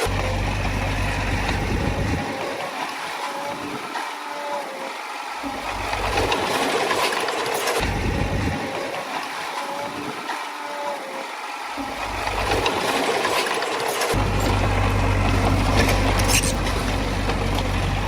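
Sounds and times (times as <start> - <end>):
bulldozer diesel engine running: 0.0 - 2.8, 5.4 - 9.0, 11.8 - 18.0.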